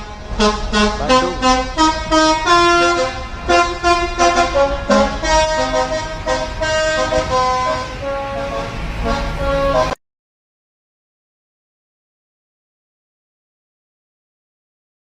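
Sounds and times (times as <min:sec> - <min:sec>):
bus engine running: 0:00.0 - 0:10.0
multi-tone bus horn melody: 0:00.0 - 0:10.0.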